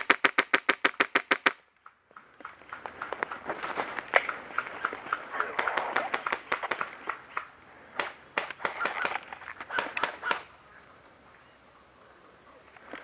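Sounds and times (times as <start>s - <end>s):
footsteps on ground: 2.1s - 7.2s.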